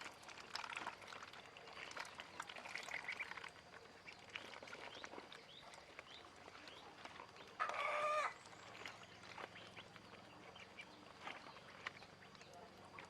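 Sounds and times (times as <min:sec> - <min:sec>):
ducklings peeping: 0:01.8 - 0:13.0
drawn-out fowl call: 0:07.6 - 0:08.4.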